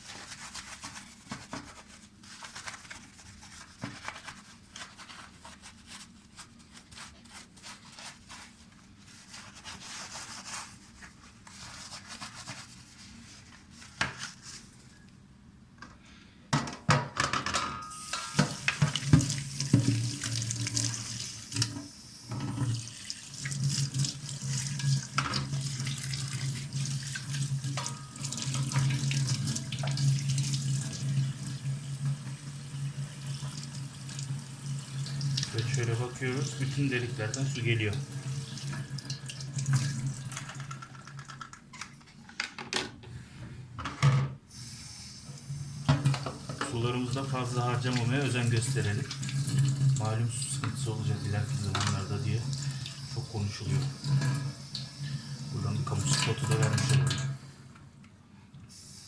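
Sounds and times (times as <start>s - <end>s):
tap water running into sink: 17.9s - 41.6s, 45.8s - 57.4s.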